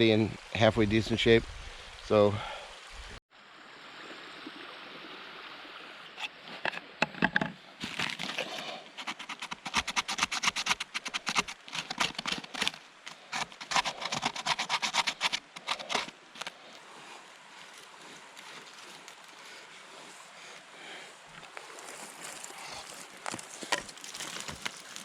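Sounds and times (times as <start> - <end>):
stream rushing: 1.1 - 25.0
crunching scraping clicks: 6.6 - 16.6, 22.2 - 25.0.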